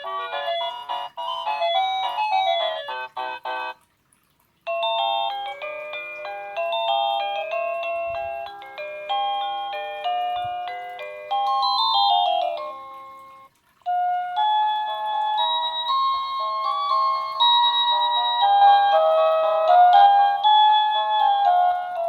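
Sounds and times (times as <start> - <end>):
doorbell chime melody: 4.7 - 22.0.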